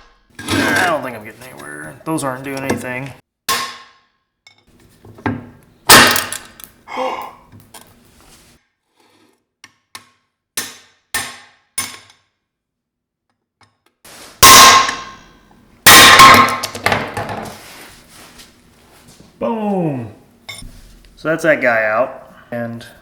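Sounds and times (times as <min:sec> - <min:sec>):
hammer striking metal: 0:03.5 - 0:04.0, 0:05.9 - 0:06.5, 0:14.4 - 0:16.7.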